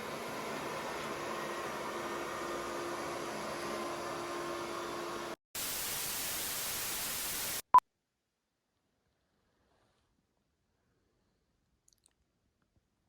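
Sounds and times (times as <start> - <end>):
static hiss: 5.6 - 7.8.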